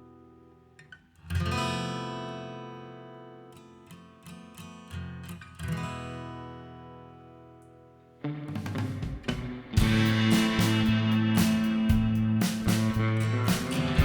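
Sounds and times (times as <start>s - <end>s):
acoustic guitar strummed chords: 8.3s - 14.0s
plucked guitar notes: 8.3s - 14.0s.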